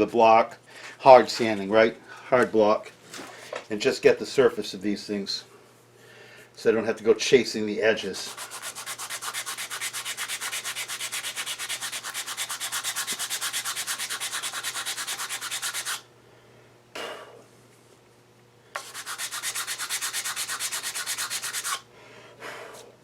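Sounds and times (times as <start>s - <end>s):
sandpaper rubbing on wood: 8.2s - 16.0s, 18.8s - 21.8s.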